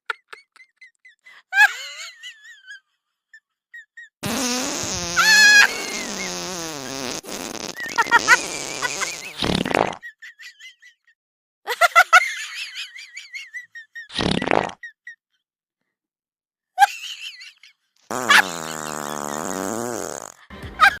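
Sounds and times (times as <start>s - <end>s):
short noisy fart blasts: 4.2s - 10.0s, 14.2s - 14.8s, 18.1s - 20.4s
squeaky fart sounds: 4.2s - 10.0s, 14.1s - 14.8s, 18.1s - 21.0s.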